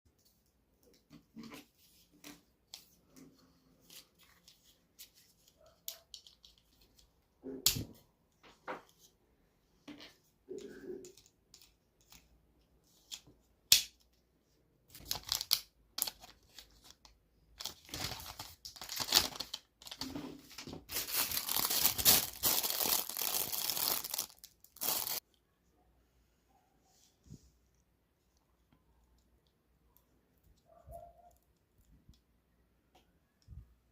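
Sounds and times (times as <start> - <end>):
plastic crinkling and tearing: 14.9 - 25.2.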